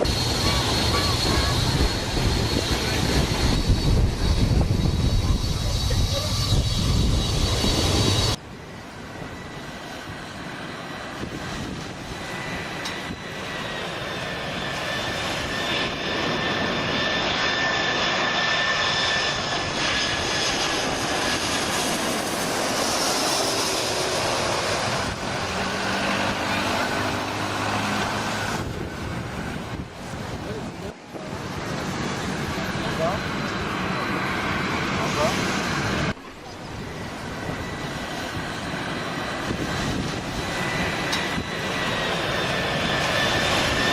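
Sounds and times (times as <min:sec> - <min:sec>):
jet engines rumbling and whining: 0:00.0 - 0:43.9.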